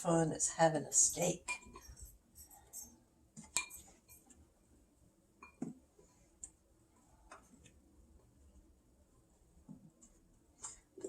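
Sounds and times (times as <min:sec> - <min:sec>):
spoon clinking against bowl: 0:03.5 - 0:03.8.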